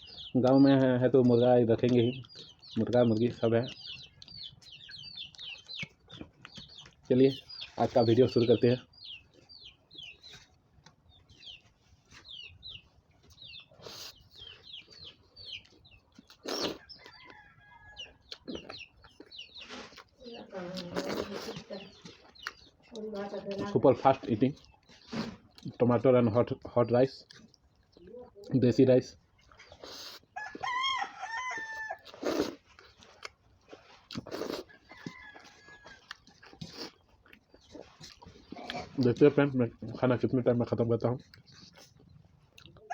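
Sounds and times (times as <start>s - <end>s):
chicks peeping: 0.0s - 42.9s
rooster crowing: 30.4s - 32.1s, 34.8s - 36.1s.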